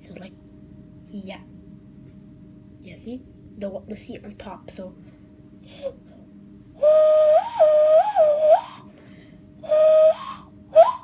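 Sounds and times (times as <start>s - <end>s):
hand whistle: 6.8s - 8.9s, 9.6s - 11.0s.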